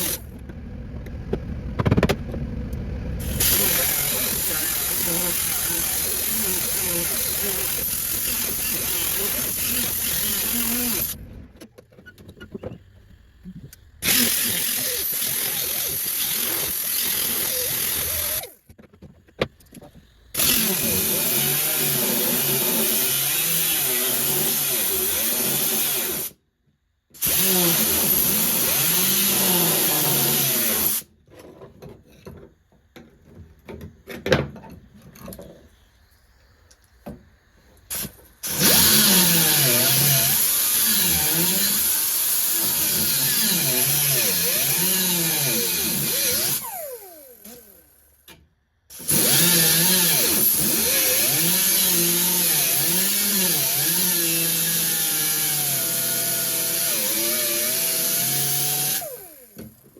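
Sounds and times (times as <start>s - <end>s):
power tool cutting metal: 0.0s - 0.3s, 3.2s - 11.2s, 14.0s - 18.6s, 20.4s - 26.4s, 27.2s - 31.1s, 37.9s - 48.0s, 48.9s - 59.7s.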